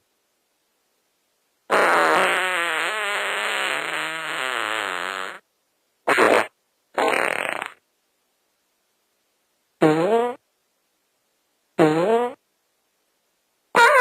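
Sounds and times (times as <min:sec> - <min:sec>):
farts: 0:01.7 - 0:05.4, 0:06.1 - 0:07.8, 0:09.8 - 0:10.4, 0:11.8 - 0:12.4, 0:13.8 - 0:14.0.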